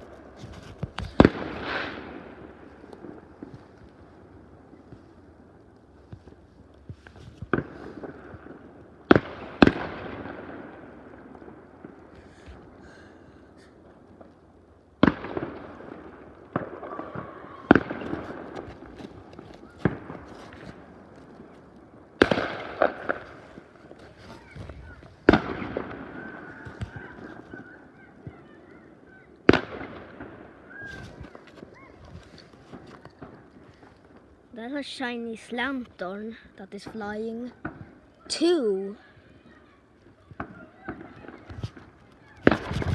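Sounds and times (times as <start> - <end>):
fireworks bangs: 0.0 - 5.2, 7.0 - 13.0, 15.0 - 33.7, 40.3 - 42.9
fireworks popping and crackling: 0.0 - 42.9.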